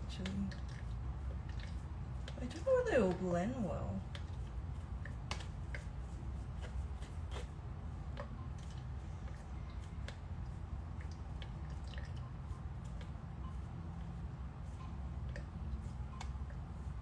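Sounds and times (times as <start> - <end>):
steady low hum: 0.0 - 17.0.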